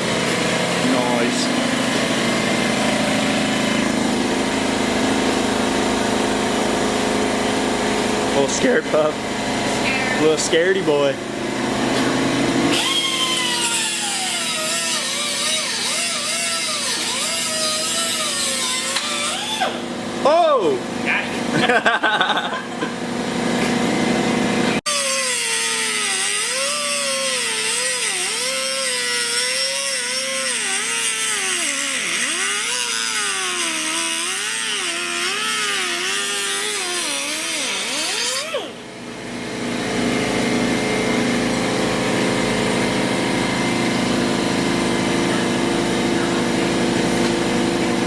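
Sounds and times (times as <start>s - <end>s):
engine running steadily: 0.0s - 13.5s, 19.0s - 24.8s, 37.6s - 48.0s.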